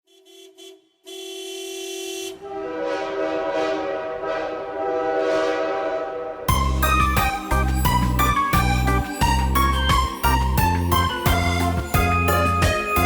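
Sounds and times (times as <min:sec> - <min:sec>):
train horn: 0:00.1 - 0:06.8
music: 0:02.5 - 0:13.0.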